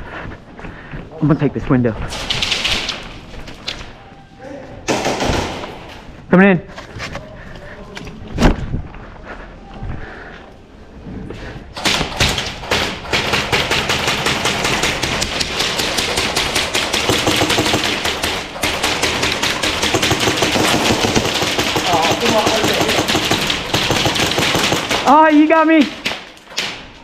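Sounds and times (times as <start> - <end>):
airsoft gunfire: 4.9 - 5.8, 11.8 - 25.4.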